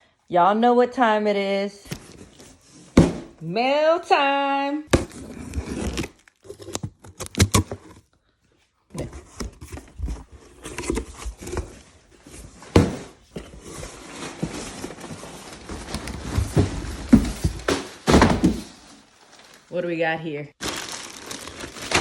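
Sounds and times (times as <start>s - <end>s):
cardboard and packing rustling: 1.8s - 3.5s, 4.9s - 8.1s, 8.9s - 19.8s, 20.6s - 22.0s.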